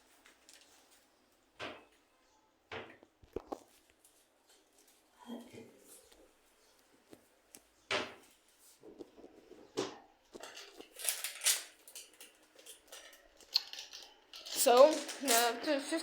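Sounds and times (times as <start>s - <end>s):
kitchenware scraping and rustling: 7.9s - 16.0s.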